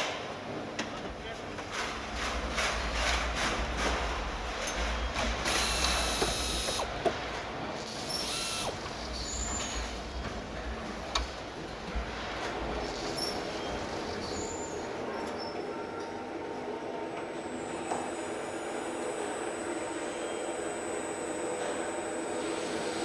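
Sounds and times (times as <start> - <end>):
air hissing: 5.5 - 6.9, 17.5 - 23.0
machinery low hum: 16.9 - 23.0.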